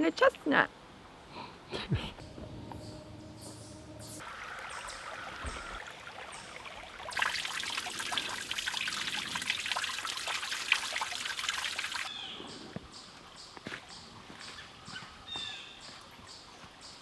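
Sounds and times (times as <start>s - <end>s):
creek water babbling over rocks: 4.2s - 12.1s.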